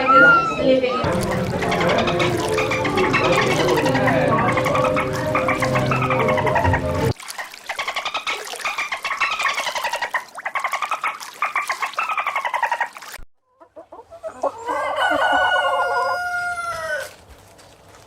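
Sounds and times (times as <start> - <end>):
chicken clucking: 0.0 - 7.1, 7.7 - 17.2
rooster crowing: 14.6 - 17.2.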